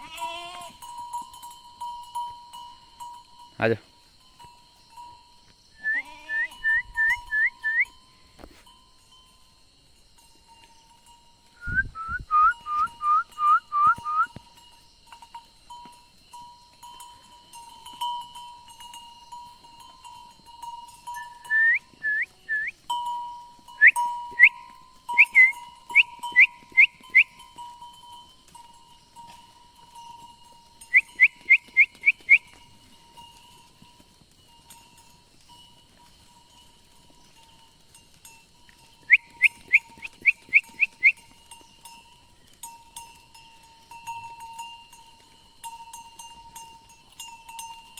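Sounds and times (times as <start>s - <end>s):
sharp rising whistled notes: 11.6s - 14.3s, 21.2s - 22.7s, 25.2s - 27.3s.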